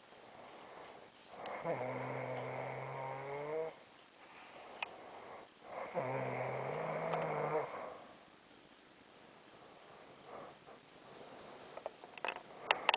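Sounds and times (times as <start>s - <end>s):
woman snoring: 1.4s - 3.9s, 5.7s - 8.0s.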